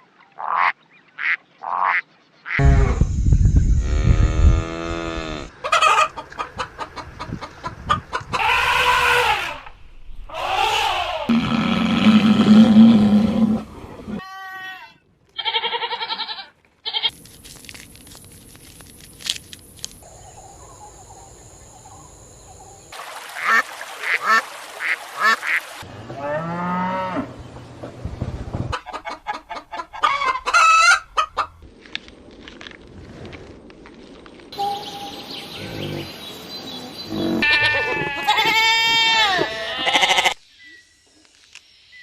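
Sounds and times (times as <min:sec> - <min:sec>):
waterfowl honking: 0:23.4 - 0:25.8.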